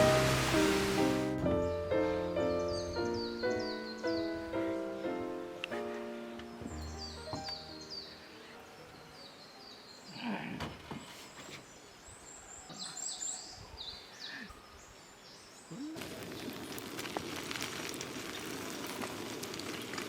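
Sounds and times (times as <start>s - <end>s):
small birds chirping: 1.6s - 16.8s
crackling hiss with fine snaps: 5.5s - 6.6s, 16.0s - 20.0s.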